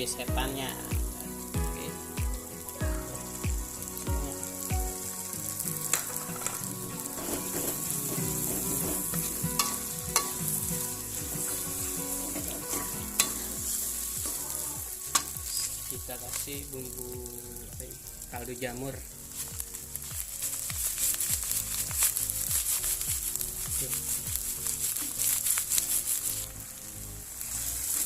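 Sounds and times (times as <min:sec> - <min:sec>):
paste sizzling in hot oil: 0:00.0 - 0:28.0
spatula scraping a pan: 0:05.9 - 0:15.8.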